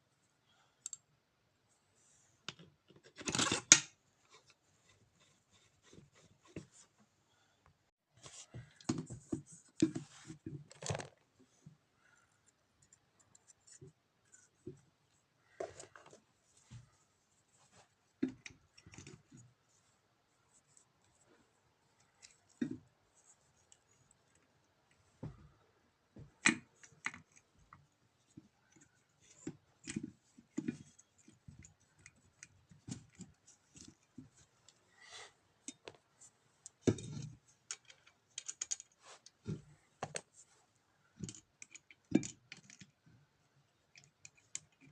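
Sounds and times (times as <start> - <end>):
metal parts and tools clicking: 37.6 - 39.0.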